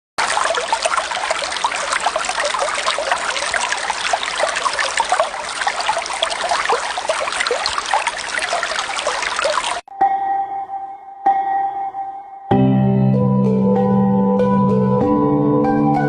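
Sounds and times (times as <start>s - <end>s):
stream water flowing: 0.2s - 9.9s.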